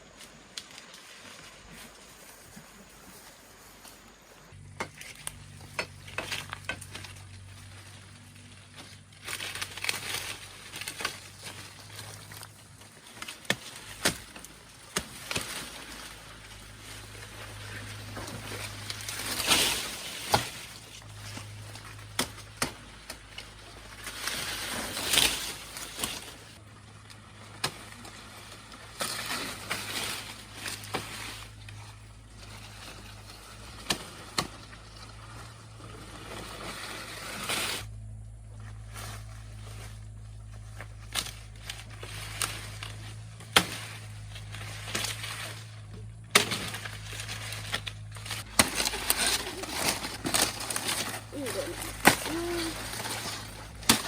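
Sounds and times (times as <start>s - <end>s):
sugarcane leaves rustling: 0.0s - 54.0s
stalks snapping and knocking: 4.8s - 7.5s, 8.7s - 16.7s, 17.8s - 26.6s, 32.5s - 35.0s, 40.8s - 54.0s.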